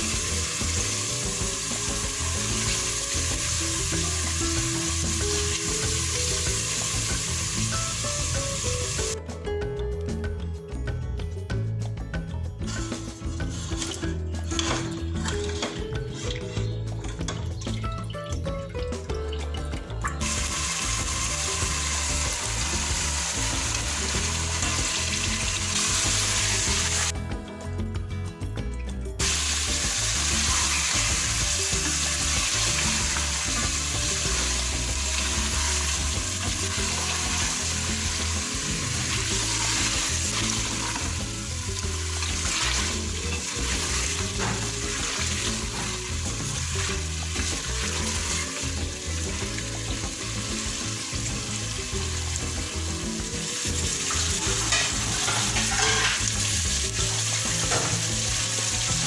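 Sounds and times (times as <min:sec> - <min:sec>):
food sizzling in hot oil: 0:00.0 - 0:09.2, 0:12.7 - 0:18.0, 0:20.2 - 0:27.1, 0:29.2 - 0:59.0
spoon scraping a pot: 0:12.7 - 0:17.6, 0:54.0 - 0:56.8.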